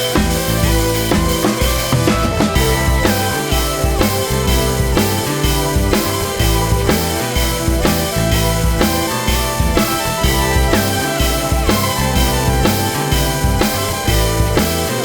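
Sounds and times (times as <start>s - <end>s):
instrumental music with drum beat: 0.0s - 15.0s.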